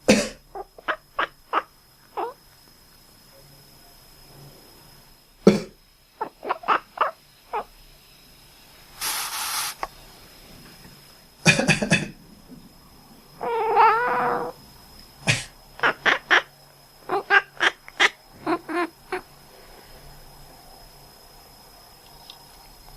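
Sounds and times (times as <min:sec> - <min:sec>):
person coughing: 0:00.0 - 0:00.4, 0:11.5 - 0:12.2, 0:15.3 - 0:15.5
cat quacking calls: 0:06.2 - 0:07.7, 0:13.4 - 0:14.5, 0:15.8 - 0:16.5, 0:17.1 - 0:19.2
hiss burst: 0:08.8 - 0:10.5.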